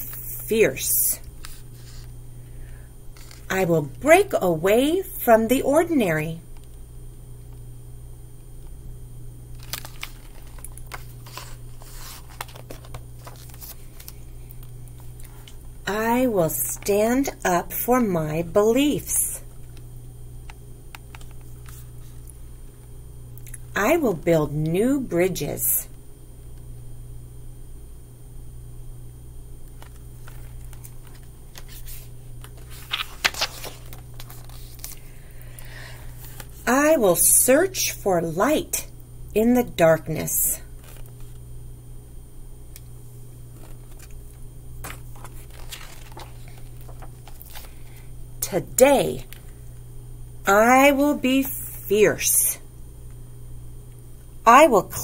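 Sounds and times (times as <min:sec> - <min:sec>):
low electrical hum: 0:00.0 - 0:55.0
book pages rustling: 0:01.4 - 0:02.1, 0:03.2 - 0:03.5, 0:09.6 - 0:15.6, 0:21.1 - 0:22.3, 0:29.8 - 0:35.1, 0:40.8 - 0:41.4, 0:43.5 - 0:48.0.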